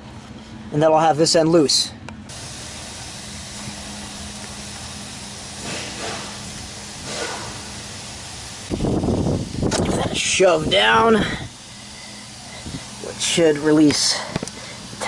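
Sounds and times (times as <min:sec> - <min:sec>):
background hiss: 0:02.3 - 0:15.0.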